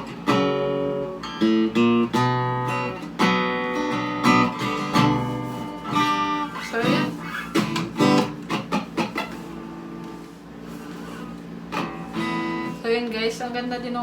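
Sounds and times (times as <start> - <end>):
electric acoustic guitar playing: 0.0 - 14.0.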